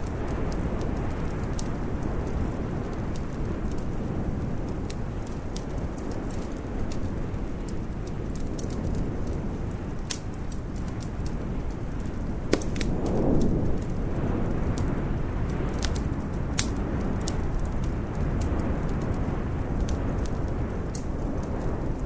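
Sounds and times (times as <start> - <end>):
low fire rumble: 0.0 - 22.0
whoosh of flames: 0.0 - 22.0
wood fire crackling: 0.0 - 22.0.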